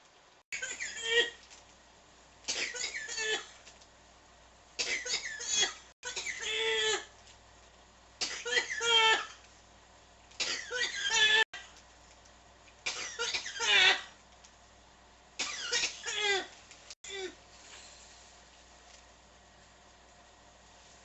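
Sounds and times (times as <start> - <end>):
person coughing: 2.5 - 3.6, 4.8 - 7.1, 10.4 - 11.5, 15.4 - 16.5.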